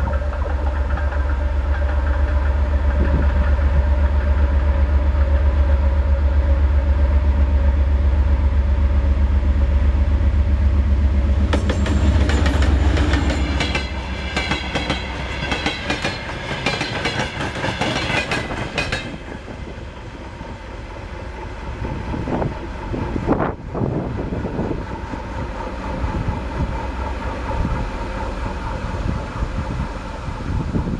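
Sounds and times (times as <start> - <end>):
train wheels clattering: 0.0 - 4.6, 11.4 - 20.7
diesel train engine throb: 0.0 - 30.9.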